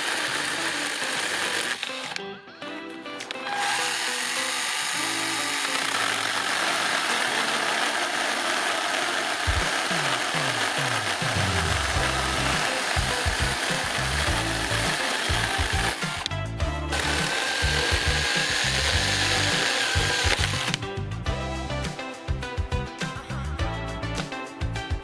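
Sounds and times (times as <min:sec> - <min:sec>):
mini chainsaw buzzing: 0:00.0 - 0:02.1, 0:03.5 - 0:16.3, 0:16.9 - 0:20.8
background music with bass: 0:11.2 - 0:25.0.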